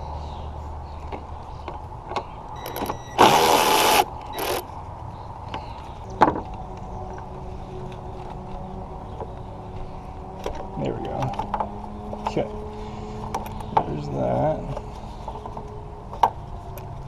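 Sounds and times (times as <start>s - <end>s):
small electric motor running: 3.2s - 4.6s.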